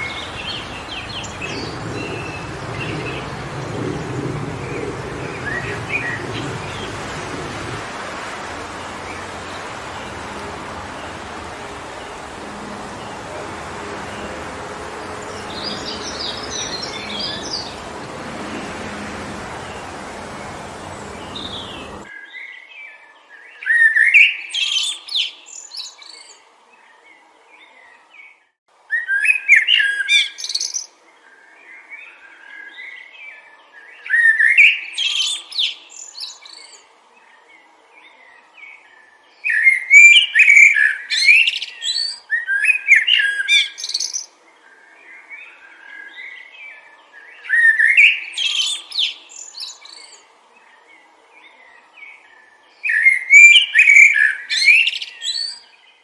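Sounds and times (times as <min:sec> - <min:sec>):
songbird warbling: 0:00.0 - 0:22.1
wind rush: 0:00.0 - 0:22.1.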